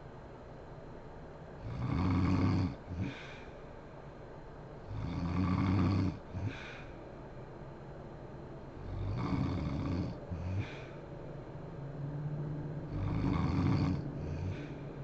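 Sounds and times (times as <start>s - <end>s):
woman snoring: 1.6s - 3.2s, 4.9s - 6.7s, 8.8s - 10.9s, 12.9s - 14.8s.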